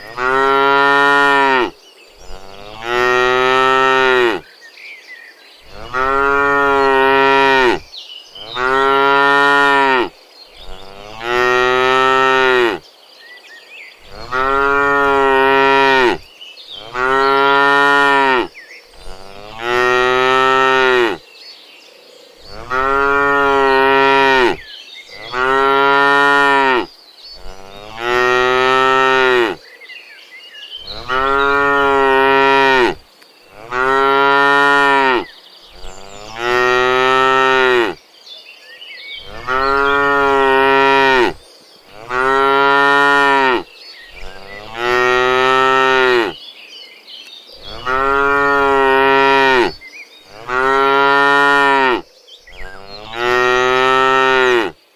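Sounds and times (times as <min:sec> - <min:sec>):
cattle mooing: 0:00.1 - 0:01.7, 0:02.3 - 0:04.4, 0:05.7 - 0:07.8, 0:08.4 - 0:12.8, 0:14.1 - 0:16.2, 0:16.8 - 0:21.2, 0:22.5 - 0:29.6, 0:30.9 - 0:35.2, 0:35.8 - 0:38.0, 0:39.2 - 0:43.6, 0:44.2 - 0:46.4, 0:47.6 - 0:52.0, 0:52.6 - 0:54.8.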